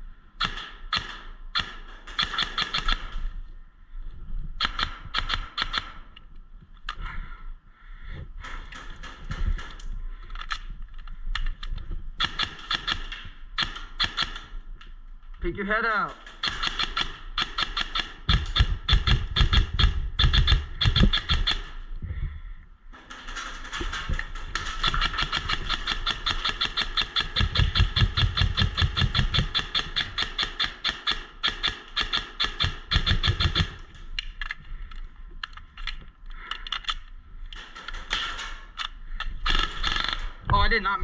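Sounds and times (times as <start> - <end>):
airsoft gun firing full auto: 0.4 - 3.2, 12.2 - 14.5, 16.2 - 21.8, 23.8 - 33.9, 37.7 - 40.4.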